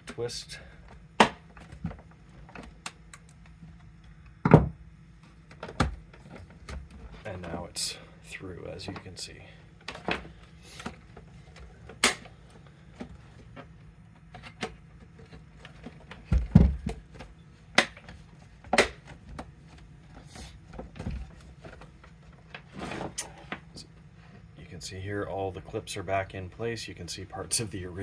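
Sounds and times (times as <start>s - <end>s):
plastic clips snapping: 12.0s - 12.3s.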